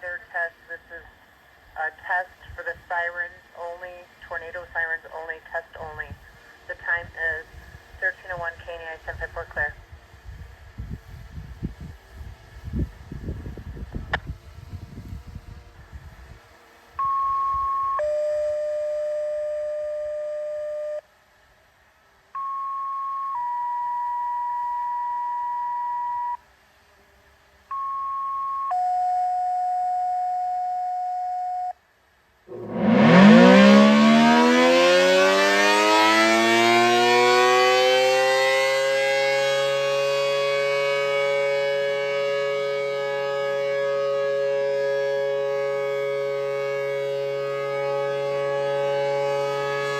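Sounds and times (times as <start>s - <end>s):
radio activation tones: 32.5s - 34.5s
tornado siren wailing: 32.5s - 49.9s.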